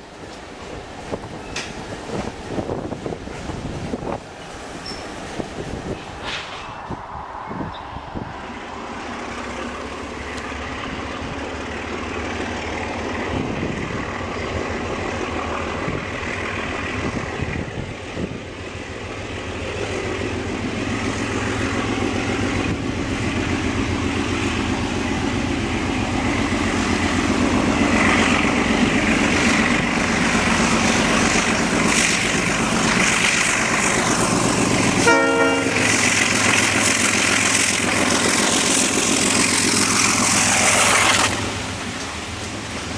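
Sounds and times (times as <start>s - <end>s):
diesel locomotive engine rumble: 0.0s - 42.9s
rail noise: 0.0s - 42.9s
train horn blast: 34.9s - 36.3s.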